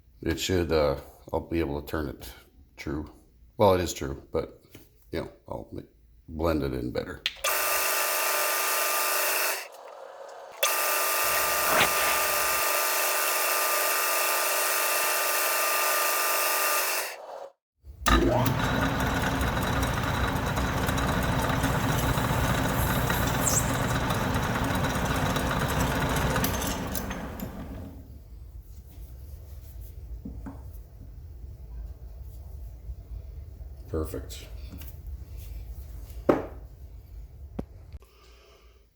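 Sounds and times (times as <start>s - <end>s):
power tool whining: 7.4s - 17.5s, 18.1s - 28.2s
heavy machine motor spinning down: 7.5s - 14.6s, 18.1s - 28.1s.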